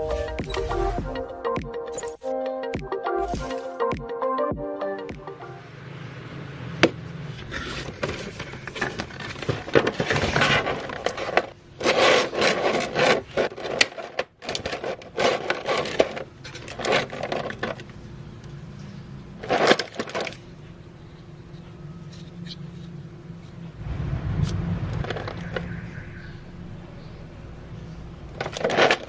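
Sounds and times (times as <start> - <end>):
cardboard and plastic scraping: 6.8 - 18.1, 19.4 - 20.5, 24.4 - 25.8, 28.3 - 29.0.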